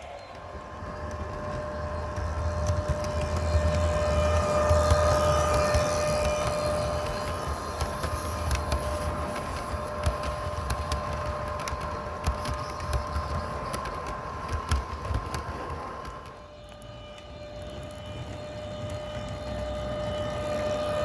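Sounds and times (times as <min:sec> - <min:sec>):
model train whine and rumble: 0:00.0 - 0:21.0
wheels clicking over rail joints: 0:00.0 - 0:21.0.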